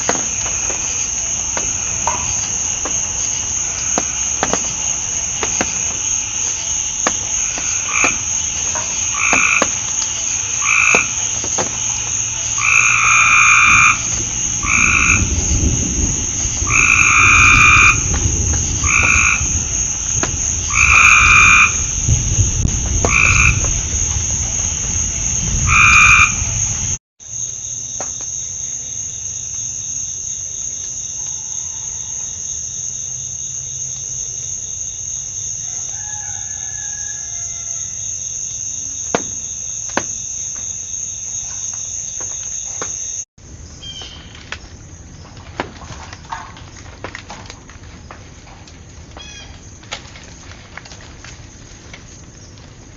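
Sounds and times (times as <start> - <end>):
frog croaking: 0.0 - 22.2, 23.0 - 27.0
high insect chorus: 0.0 - 52.9.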